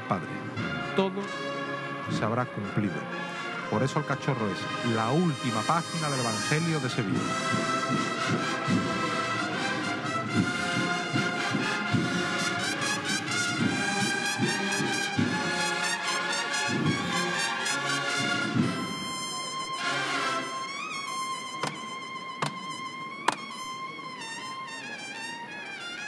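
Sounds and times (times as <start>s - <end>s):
brass band playing a march: 0.0s - 26.0s
repeated drum beats: 5.6s - 19.3s, 21.6s - 23.6s.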